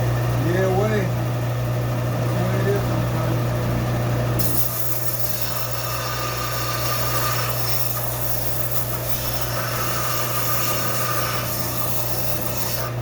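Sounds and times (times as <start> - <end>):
blade grinding on sandpaper: 4.4 - 13.0.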